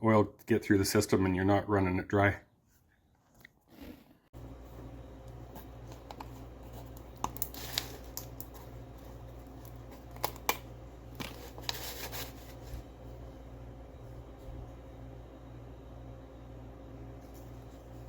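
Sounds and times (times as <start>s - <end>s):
steady low hum: 4.4s - 18.0s.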